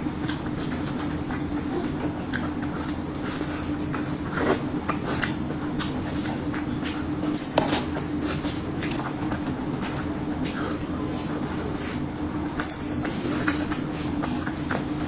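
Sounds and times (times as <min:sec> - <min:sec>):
steady low hum: 0:00.0 - 0:15.0
wet mouth clicks and smacks: 0:12.5 - 0:15.0.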